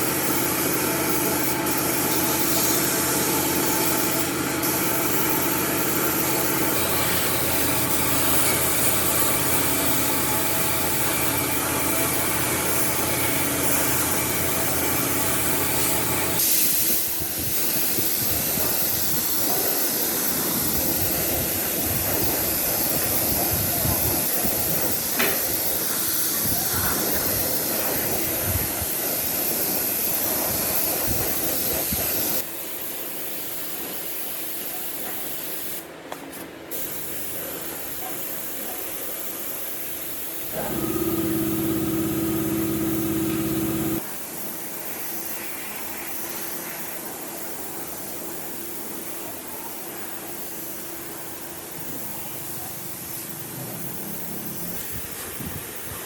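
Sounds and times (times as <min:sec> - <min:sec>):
machine hum: 0:00.0 - 0:16.5, 0:40.4 - 0:44.2
spray gun hissing: 0:00.0 - 0:56.0.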